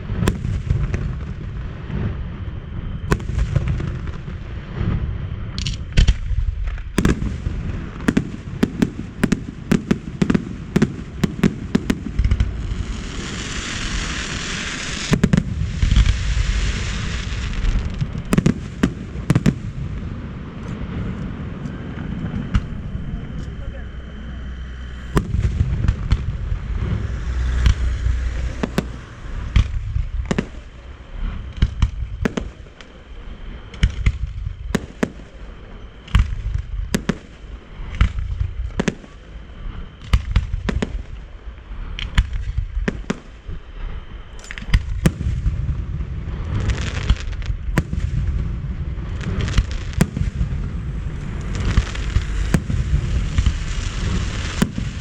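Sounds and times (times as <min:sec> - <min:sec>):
fireworks crackling: 0:00.0 - 0:02.4, 0:03.0 - 0:55.0
low rumble: 0:00.0 - 0:34.8, 0:43.7 - 0:55.0
firework shell bursts and booms: 0:49.2 - 0:55.0.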